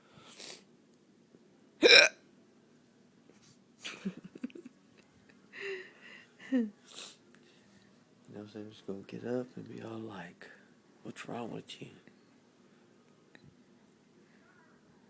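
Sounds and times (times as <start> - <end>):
woman hiccuping: 1.8 - 2.2
breathy sounds: 5.5 - 6.7.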